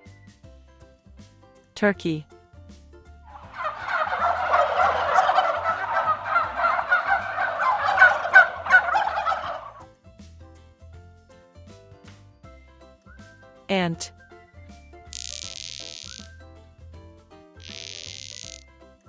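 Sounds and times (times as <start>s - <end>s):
turkey gobbling: 3.3s - 9.8s, 17.6s - 18.6s.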